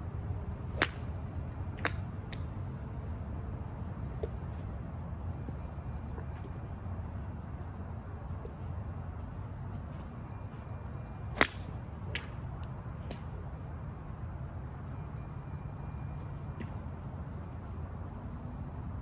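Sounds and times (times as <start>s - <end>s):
steady low rumble: 0.0s - 19.0s
golf club striking ball: 0.8s - 1.1s, 11.4s - 12.3s.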